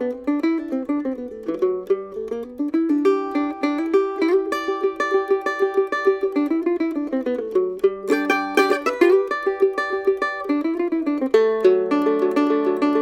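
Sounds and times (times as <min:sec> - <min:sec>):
mando-guitar playing slow riff: 0:08.0 - 0:13.0.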